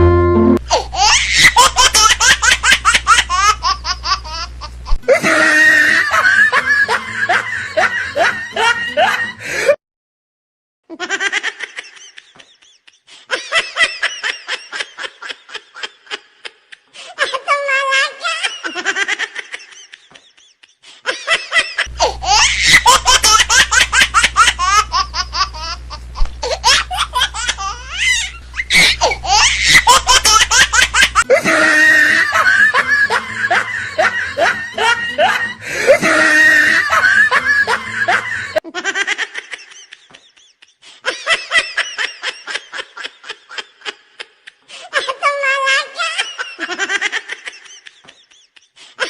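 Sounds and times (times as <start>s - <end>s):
steady low hum: 0.0s - 9.2s, 21.9s - 38.6s
people laughing hard: 0.7s - 9.8s, 11.0s - 49.0s.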